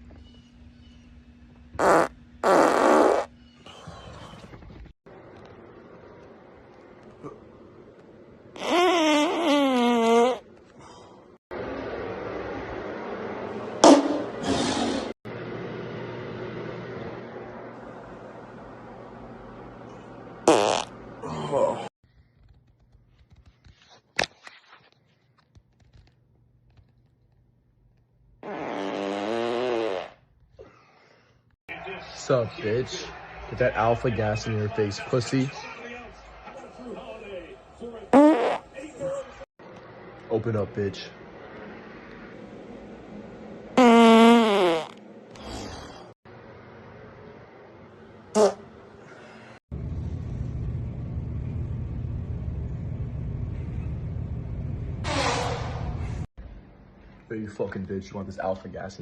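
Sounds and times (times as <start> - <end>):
man farting: 1.8 - 3.3, 8.6 - 10.5, 20.4 - 21.9, 28.4 - 30.3, 38.1 - 38.7, 43.8 - 45.6, 48.3 - 48.7
low rumble: 49.7 - 55.0.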